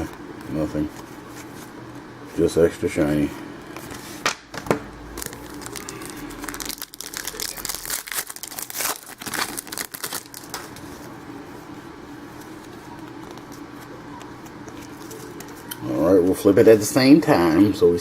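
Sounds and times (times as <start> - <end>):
wrapper crinkling and tearing: 5.0 - 10.9.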